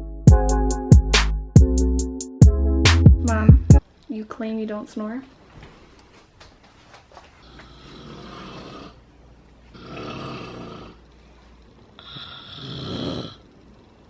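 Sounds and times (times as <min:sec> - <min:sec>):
woman snoring: 0:07.4 - 0:09.0, 0:09.7 - 0:11.0, 0:12.0 - 0:13.5.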